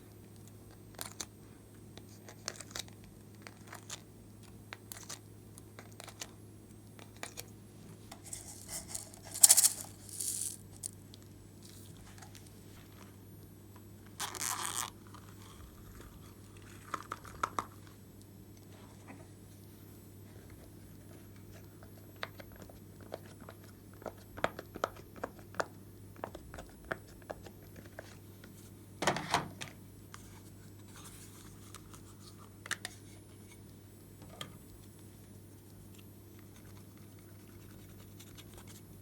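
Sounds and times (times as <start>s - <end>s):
low steady hum: 0.0s - 39.0s.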